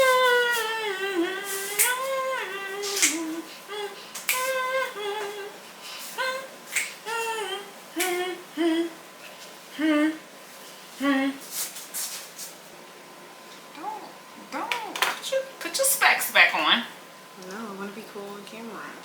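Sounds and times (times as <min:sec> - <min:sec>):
person singing sliding notes: 0:00.0 - 0:09.0
finger snaps: 0:01.7 - 0:02.1, 0:02.8 - 0:03.4, 0:04.2 - 0:04.6, 0:06.7 - 0:07.0, 0:08.0 - 0:08.2.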